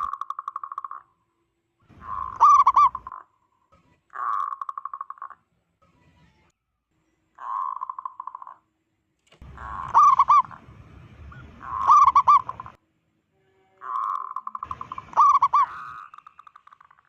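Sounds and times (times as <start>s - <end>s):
dove cooing: 2.0s - 3.2s, 7.4s - 8.5s, 9.5s - 10.6s, 11.6s - 12.8s, 13.8s - 16.2s.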